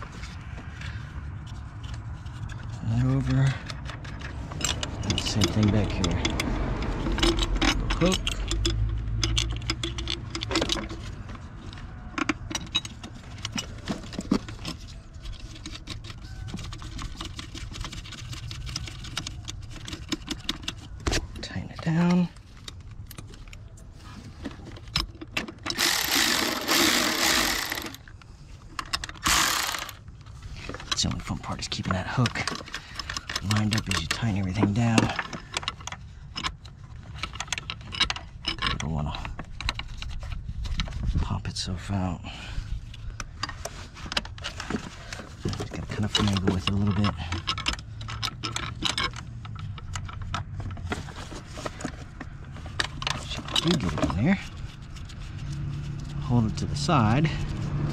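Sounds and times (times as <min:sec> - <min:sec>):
light handling clicks and knocks: 0:01.4 - 0:41.1, 0:42.8 - 0:57.9
cordless power tool running: 0:25.7 - 0:28.0, 0:29.3 - 0:30.0.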